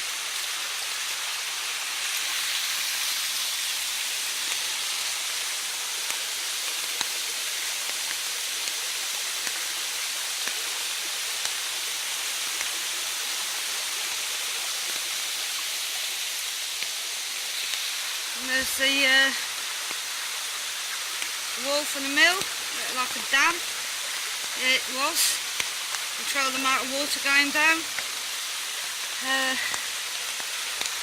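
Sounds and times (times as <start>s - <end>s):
rain falling: 0.0s - 31.0s
waterfall rushing: 0.0s - 31.0s
raindrop ticks: 10.4s - 10.7s, 20.9s - 28.4s, 29.0s - 31.0s.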